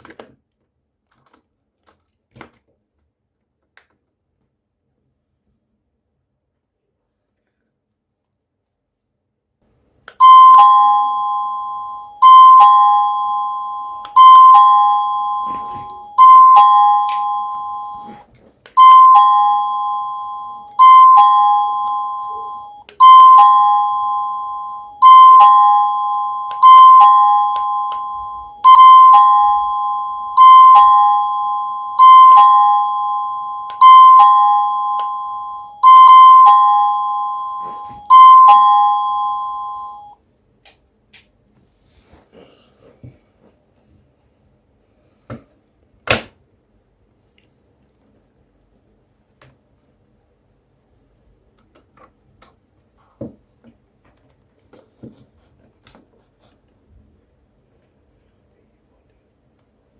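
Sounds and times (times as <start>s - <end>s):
two-note doorbell chime: 10.2s - 18.2s, 18.8s - 40.2s.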